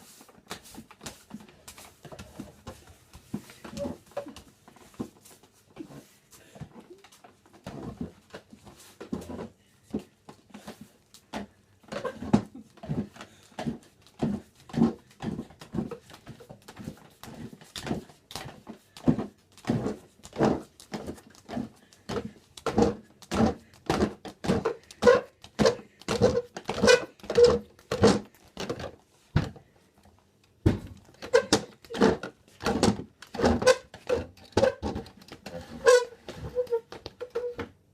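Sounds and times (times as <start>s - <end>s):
chair legs scraping floor: 19.0s - 28.9s, 31.2s - 37.7s.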